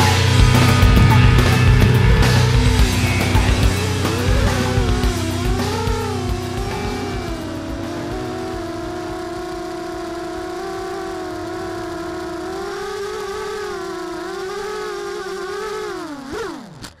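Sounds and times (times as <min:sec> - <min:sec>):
quadcopter motors whining: 0:00.0 - 0:17.0.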